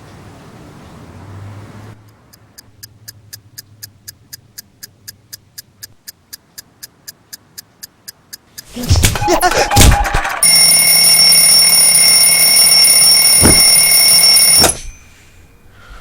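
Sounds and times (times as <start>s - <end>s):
alarm clock ticking: 2.0s - 8.7s, 10.4s - 15.1s.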